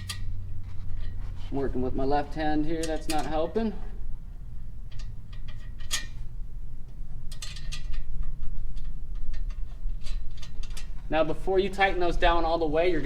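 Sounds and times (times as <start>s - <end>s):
metallic clicks of nuts and bolts: 0.0s - 1.2s, 2.8s - 3.5s, 4.8s - 6.2s, 6.9s - 11.1s
low steady hum: 0.0s - 13.0s.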